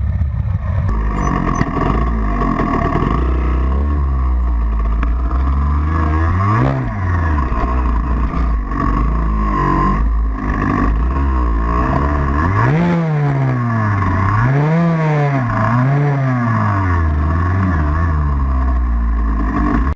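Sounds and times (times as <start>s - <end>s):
engine revving: 0.0s - 19.9s.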